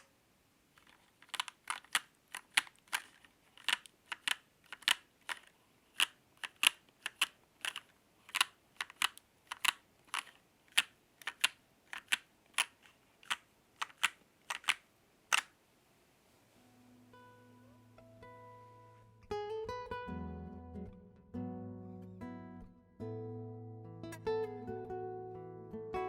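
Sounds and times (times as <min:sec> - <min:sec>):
mechanical keyboard keystroke clicks: 0:00.8 - 0:15.5.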